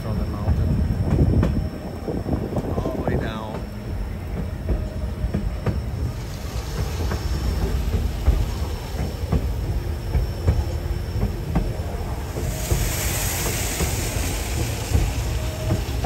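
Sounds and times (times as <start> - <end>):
railway car rumbling: 0.0 - 16.0
wheels knocking and clicking: 0.0 - 16.0
hissing rush: 6.0 - 16.0.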